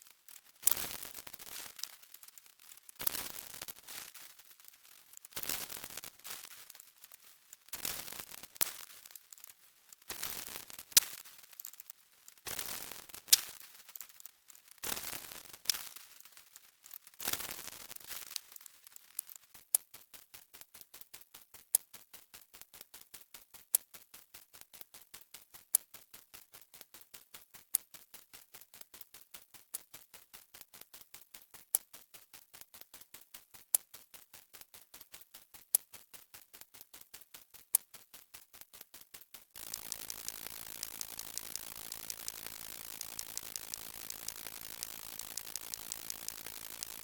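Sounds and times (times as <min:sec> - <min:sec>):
ratcheting click: 0:39.6 - 0:47.0
ticking clicks: 0:39.6 - 0:47.0.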